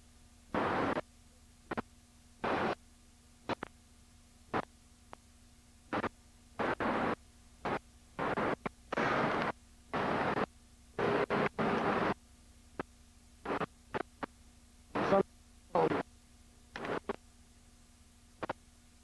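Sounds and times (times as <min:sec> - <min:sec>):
low electrical hum: 0:00.0 - 0:19.0
harsh static bursts: 0:00.6 - 0:01.0, 0:01.7 - 0:02.8, 0:03.5 - 0:03.7, 0:05.9 - 0:12.2, 0:12.8 - 0:14.3, 0:14.9 - 0:16.1, 0:16.7 - 0:17.2.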